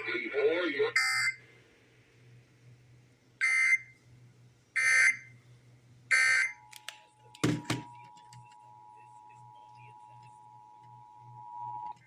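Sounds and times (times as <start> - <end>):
faint steady two-tone signal: 8.0 - 12.0.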